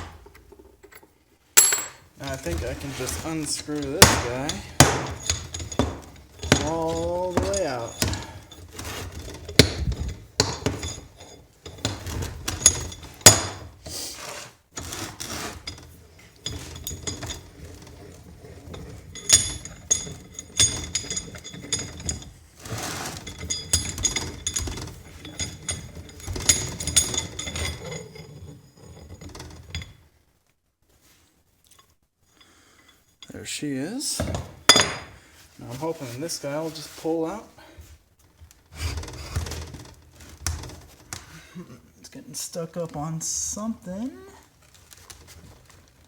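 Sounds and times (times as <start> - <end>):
metal vise screw clanking: 0.0 - 13.8, 14.8 - 30.0, 34.6 - 35.1.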